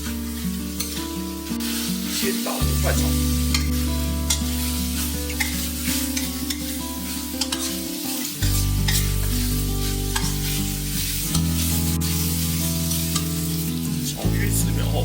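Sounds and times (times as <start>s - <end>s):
vegetables sizzling in a pan: 0.0s - 15.0s
spatula scraping and tapping pan: 0.7s - 1.0s, 2.9s - 13.7s.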